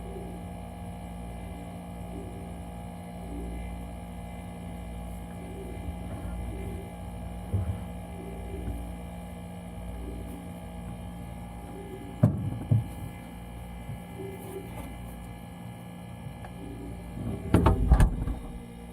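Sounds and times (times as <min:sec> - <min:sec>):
refrigerator humming: 0:00.0 - 0:18.9
dull thumps: 0:12.2 - 0:13.1.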